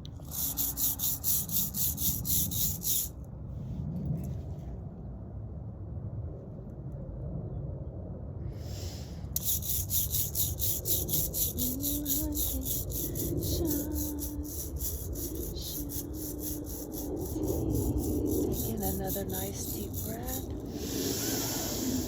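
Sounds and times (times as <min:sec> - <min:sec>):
rhythmic high rasping: 0:00.2 - 0:03.1, 0:09.4 - 0:22.0.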